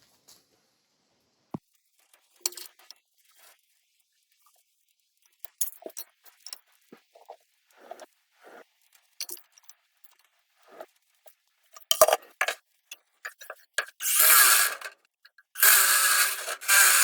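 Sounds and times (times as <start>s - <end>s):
small metal parts clinking: 11.8s - 12.6s, 13.2s - 15.0s, 15.6s - 17.0s.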